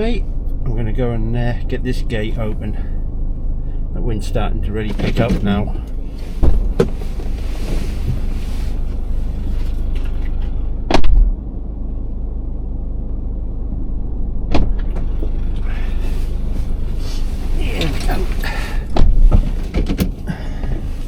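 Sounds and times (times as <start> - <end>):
loud thump: 14.5 - 15.4, 18.8 - 20.2.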